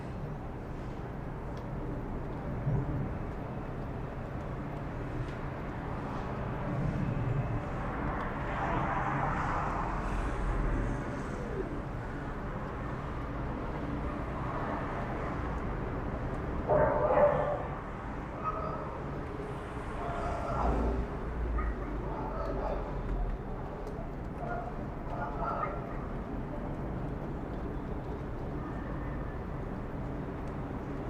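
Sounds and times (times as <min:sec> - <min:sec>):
dogs barking: 0:16.7 - 0:17.8, 0:24.4 - 0:26.1.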